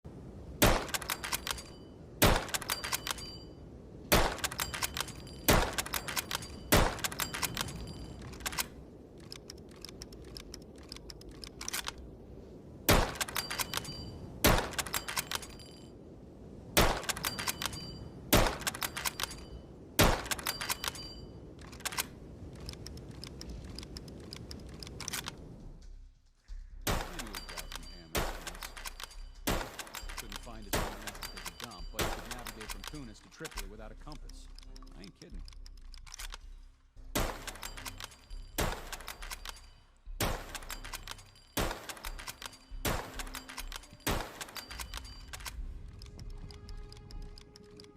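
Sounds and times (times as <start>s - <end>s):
rifle shots: 0.6s - 3.4s, 4.1s - 8.7s, 12.9s - 15.5s, 16.8s - 19.4s, 20.0s - 21.1s, 26.9s - 33.0s, 37.2s - 45.5s
metallic clicks: 0.6s - 3.5s, 4.1s - 12.2s, 12.9s - 15.9s, 16.8s - 26.0s, 26.9s - 47.9s.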